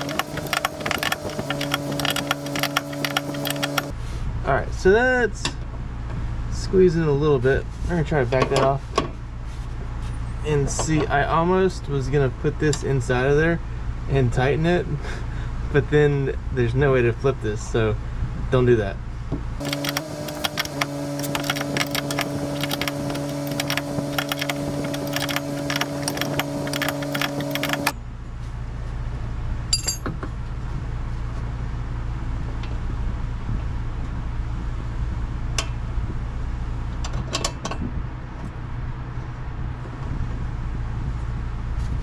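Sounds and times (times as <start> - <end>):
handheld power tool humming: 0.0 - 3.9, 19.6 - 28.0
low steady rumble: 0.0 - 42.0
metallic clinks of tools: 29.7 - 30.1.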